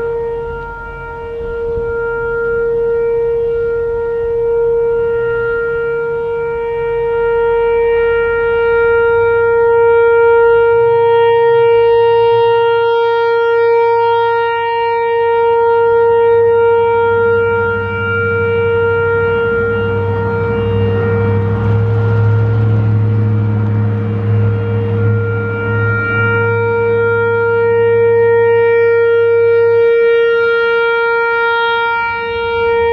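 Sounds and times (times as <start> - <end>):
low rumble: 0.0 - 11.6, 16.4 - 29.4
electronic warning siren steady tone: 0.0 - 32.9.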